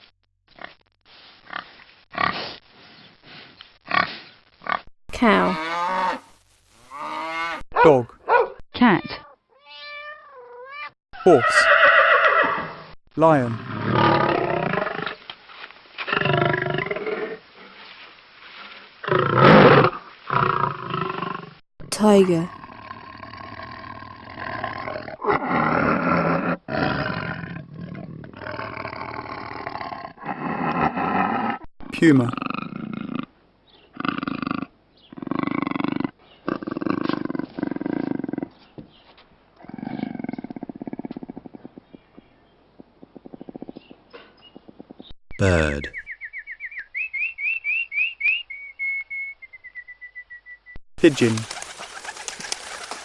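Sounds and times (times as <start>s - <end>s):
cougar growling calls: 10.0s - 12.9s, 22.5s - 31.7s, 32.3s - 38.6s, 39.6s - 45.1s
lion roaring: 13.6s - 15.2s, 22.6s - 31.7s, 34.0s - 38.6s.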